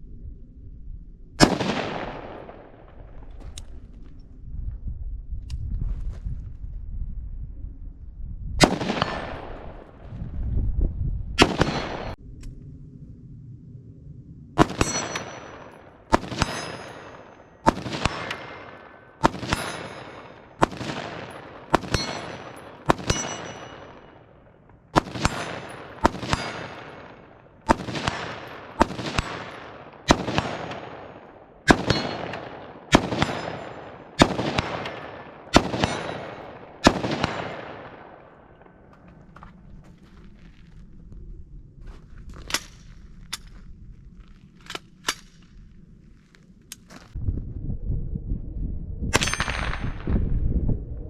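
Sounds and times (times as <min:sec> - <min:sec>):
rifle shots echoing: 0:01.4 - 0:03.3, 0:08.6 - 0:10.0, 0:11.4 - 0:12.2, 0:14.6 - 0:38.9, 0:49.1 - 0:50.1.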